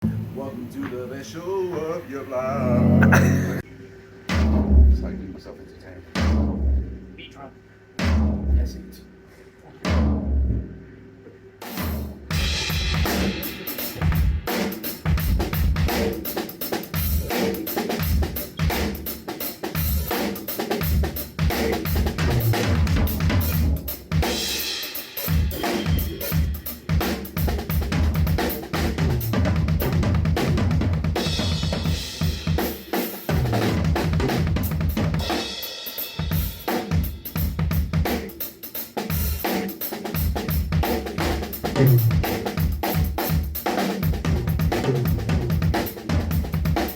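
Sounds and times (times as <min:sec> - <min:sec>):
cymbals: 0:11.6 - 0:30.6, 0:31.2 - 0:44.0
snare drum and rimshots: 0:11.6 - 0:30.6, 0:31.2 - 0:44.9.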